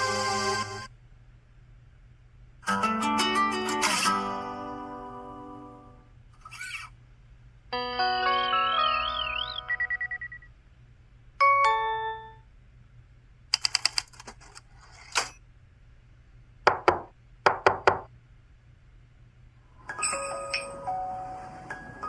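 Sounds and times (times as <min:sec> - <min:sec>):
two-note descending chime: 0:08.0 - 0:10.3
phone beeps: 0:08.6 - 0:10.5
rattle of clicks: 0:13.5 - 0:14.4.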